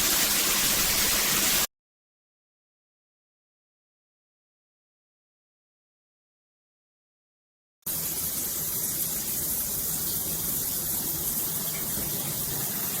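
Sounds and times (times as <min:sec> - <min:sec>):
water spraying from shower head: 0:00.0 - 0:01.7, 0:07.9 - 0:13.0.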